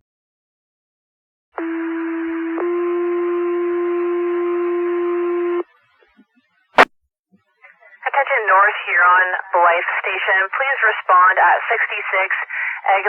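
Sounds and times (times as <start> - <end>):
radio hiss: 7.6 - 13.0.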